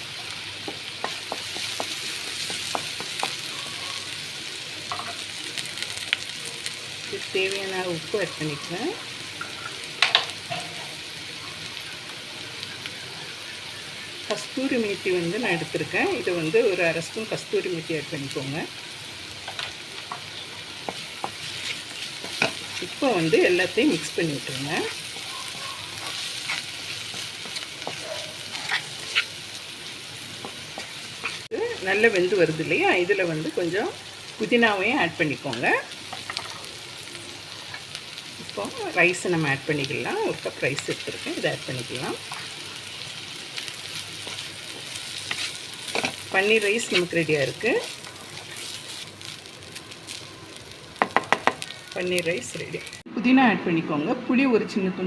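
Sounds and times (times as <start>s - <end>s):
vegetables sizzling in oil: 0.0s - 53.1s
spoon scraping a pan: 20.9s - 29.4s, 30.4s - 31.5s, 44.2s - 47.3s
spoon knocking against pan: 51.0s - 51.6s.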